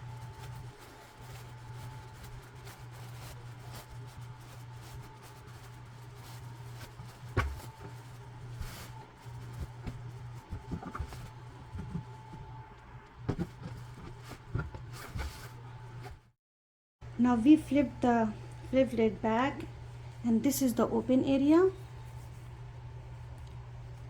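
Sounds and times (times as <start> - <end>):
fabric rustling: 0.0 - 12.5
steady low hum: 0.0 - 16.3, 17.0 - 24.0.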